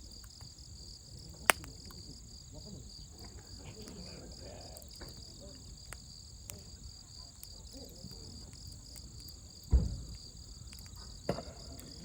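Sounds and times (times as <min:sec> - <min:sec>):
campfire crackling and popping: 0:00.0 - 0:12.0
insects chirping: 0:00.0 - 0:12.0
dull thump: 0:09.6 - 0:10.2.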